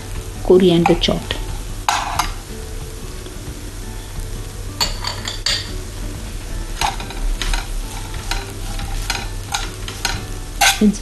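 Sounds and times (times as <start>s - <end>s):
steady low hum: 0.0s - 11.0s
spoon scraping and clinking in pan: 1.9s - 2.4s, 4.8s - 5.8s, 6.8s - 11.0s.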